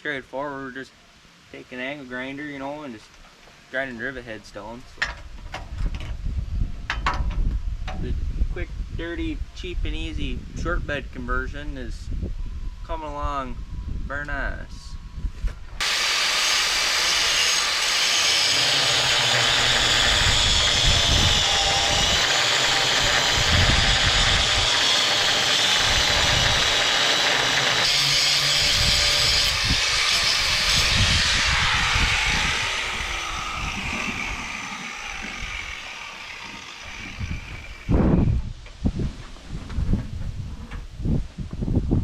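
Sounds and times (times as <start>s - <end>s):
angle grinder grinding steel: 15.8s - 38.0s.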